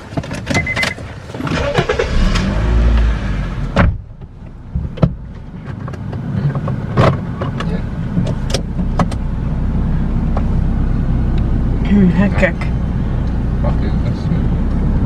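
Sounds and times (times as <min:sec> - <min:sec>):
car running low hum: 0:00.0 - 0:15.0
sharp knocks and clicks: 0:03.8 - 0:09.3.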